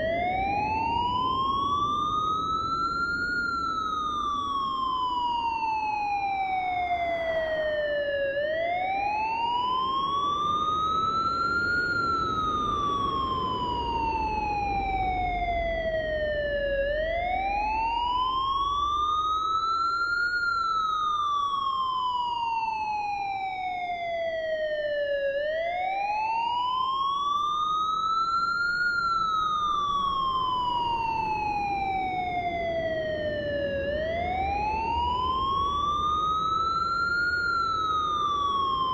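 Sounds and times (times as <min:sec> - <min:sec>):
siren wailing slowly: 0:00.0 - 0:38.9
steady low rumble: 0:29.0 - 0:38.9.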